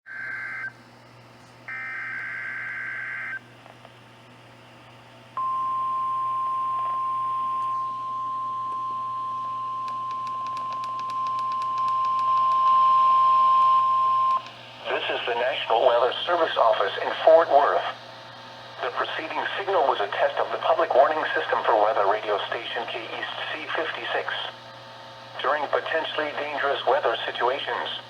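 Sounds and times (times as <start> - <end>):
steady warning alarm tone: 0.1 - 0.7, 1.7 - 3.4
low hum: 4.2 - 25.4.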